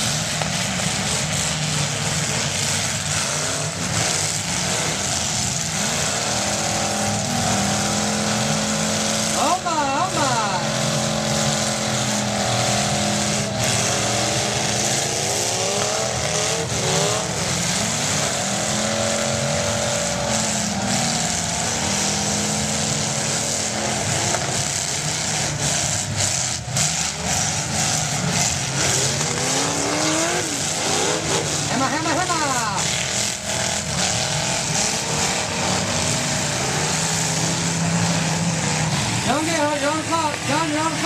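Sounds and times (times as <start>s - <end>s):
car engines revving: 0.0s - 41.0s.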